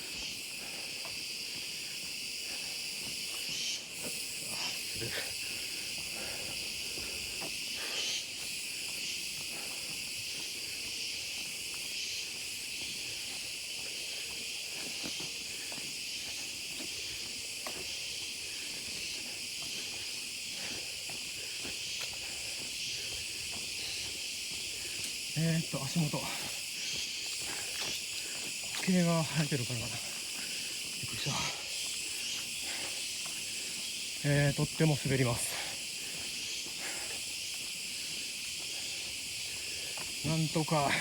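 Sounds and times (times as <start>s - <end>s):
insects shrilling: 0.0s - 41.0s.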